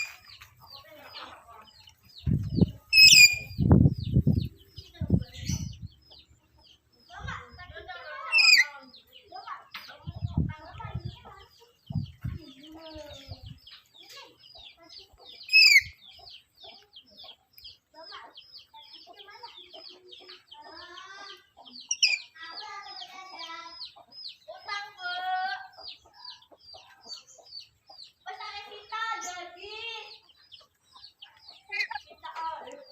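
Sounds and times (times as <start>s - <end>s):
parrot chattering calls: 8.3s - 8.7s, 31.6s - 32.0s.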